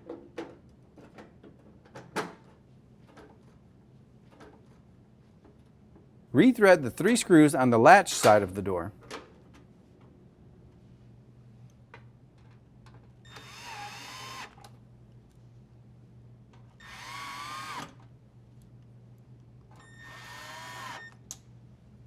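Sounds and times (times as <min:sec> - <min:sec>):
cordless drill whining: 0:13.3 - 0:14.6, 0:16.8 - 0:18.0, 0:19.8 - 0:21.2.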